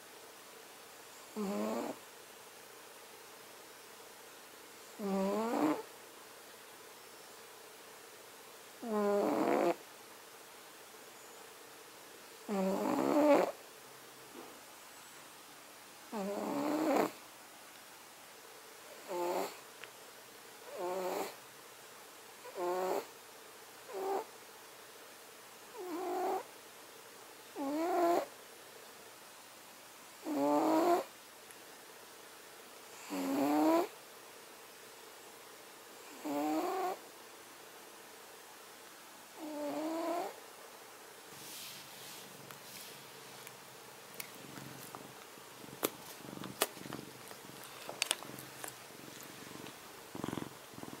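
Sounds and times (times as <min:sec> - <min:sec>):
cat snoring: 0:01.3 - 0:02.0, 0:05.0 - 0:05.9, 0:08.8 - 0:09.8, 0:12.5 - 0:13.6, 0:16.1 - 0:17.2, 0:19.0 - 0:19.6, 0:20.7 - 0:21.4, 0:22.4 - 0:23.1, 0:23.9 - 0:24.3, 0:25.7 - 0:26.5, 0:27.6 - 0:28.3, 0:30.2 - 0:31.1, 0:33.0 - 0:34.0, 0:36.0 - 0:37.0, 0:39.4 - 0:40.4, 0:44.3 - 0:51.0.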